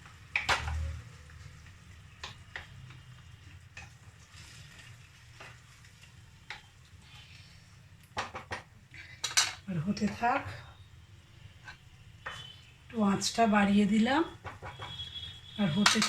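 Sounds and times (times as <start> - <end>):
food sizzling in a pan: 0.0 - 16.0
spatula knocking against pan: 8.2 - 8.7, 14.3 - 15.2.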